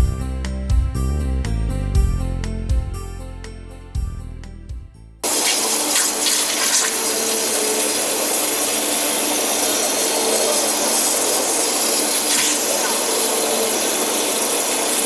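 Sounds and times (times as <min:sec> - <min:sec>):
water jet cutting hiss: 0:05.2 - 0:15.0.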